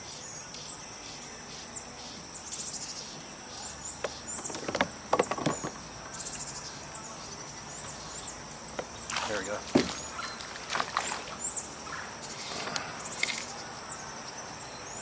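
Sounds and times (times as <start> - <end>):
crickets and insects trilling: 0.0 - 15.0
knocks and rustles: 4.0 - 5.8, 9.6 - 10.1.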